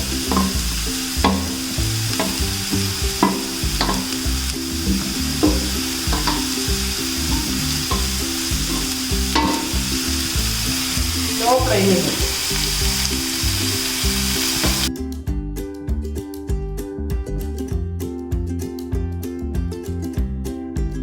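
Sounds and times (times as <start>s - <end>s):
food sizzling in oil: 0.0s - 14.9s
spoon scraping a pan: 0.3s - 10.9s.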